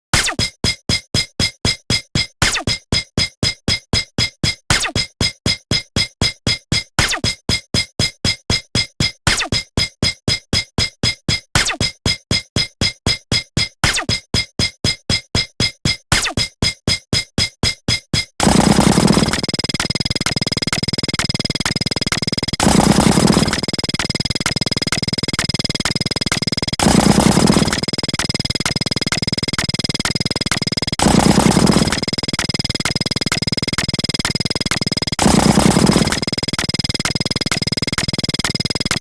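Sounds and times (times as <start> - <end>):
fast electronic ticks: 0.2 - 39.0
buzzing burst: 18.4 - 38.6.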